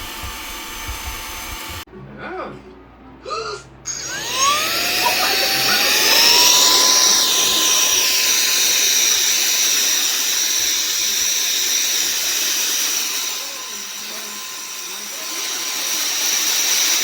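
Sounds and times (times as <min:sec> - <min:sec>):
handheld vacuum motor whine: 0:00.0 - 0:01.8, 0:03.9 - 0:17.0
rushing air: 0:04.0 - 0:16.6.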